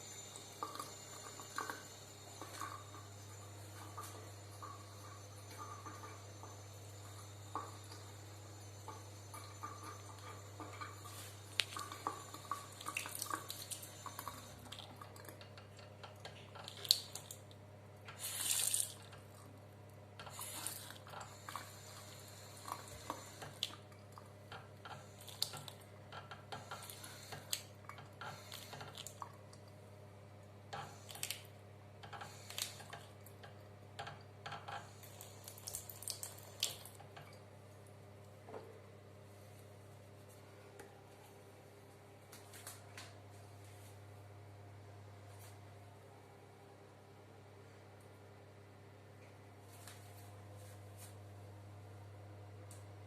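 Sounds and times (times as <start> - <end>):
water dripping in a sink: 0.0 - 38.8, 52.6 - 53.0.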